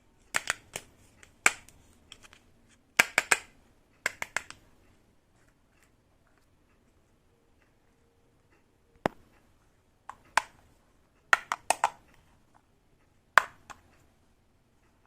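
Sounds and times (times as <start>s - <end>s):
toy kitchen pieces clicking: 0.3s - 2.4s, 3.0s - 3.5s, 4.1s - 4.6s, 11.4s - 12.1s.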